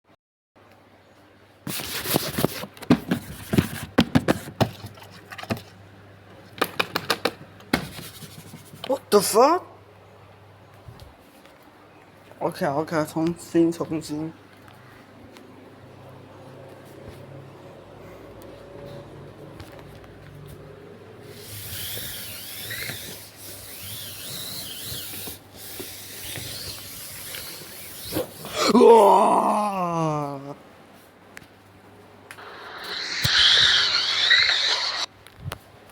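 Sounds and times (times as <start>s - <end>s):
sharp scratches and taps: 6.6s - 8.9s, 32.4s - 35.1s
close-up rubbing: 32.4s - 35.1s
wavering high squeak: 32.4s - 35.1s.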